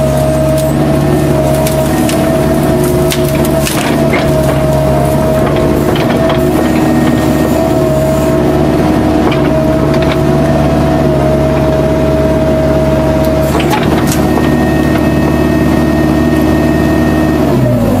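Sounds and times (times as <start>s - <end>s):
diesel excavator engine running: 0.0s - 18.0s
held whine: 0.0s - 18.0s
sharp knocks and cracks: 1.4s - 7.4s, 9.0s - 10.4s, 13.3s - 15.1s.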